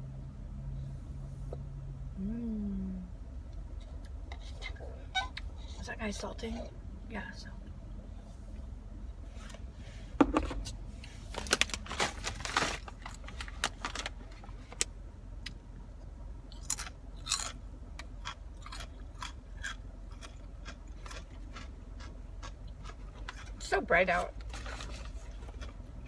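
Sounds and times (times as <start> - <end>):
car heater hum: 0.0 - 26.0
person chewing and crunching food: 16.5 - 23.6, 24.3 - 26.0.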